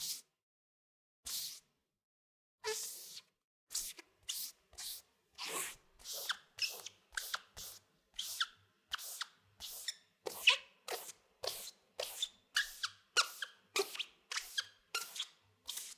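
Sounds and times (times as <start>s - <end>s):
squeegee wiping a wall: 4.3s - 15.9s.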